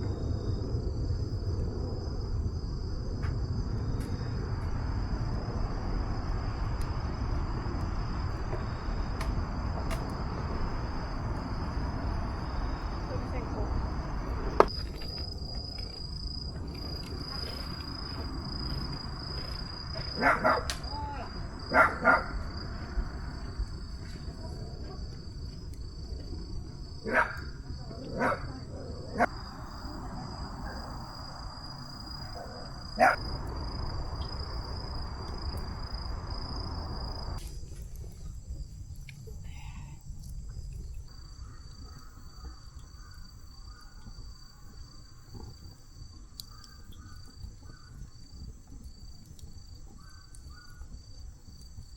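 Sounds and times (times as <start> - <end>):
low rushing noise: 0.0 - 20.0
crickets trilling: 0.0 - 51.9
dog barking: 20.0 - 20.7, 21.7 - 22.4, 27.0 - 29.3, 32.4 - 33.2.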